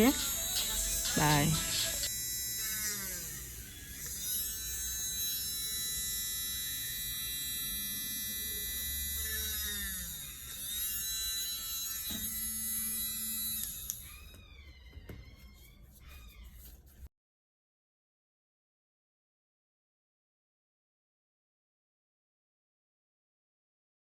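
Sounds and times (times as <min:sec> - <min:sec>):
electric drill motor whine: 0:00.0 - 0:15.2.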